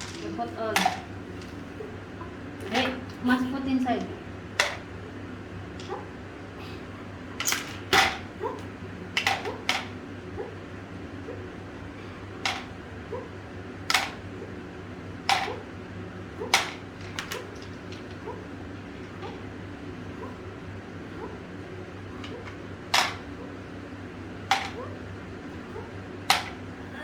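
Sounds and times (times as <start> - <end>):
plastic toy pieces clacking: 16.5 - 18.2.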